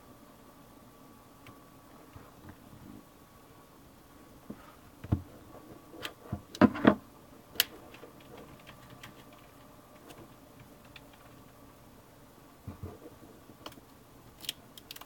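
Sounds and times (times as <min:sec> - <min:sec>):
hands handling cd packaging: 0:07.6 - 0:11.6.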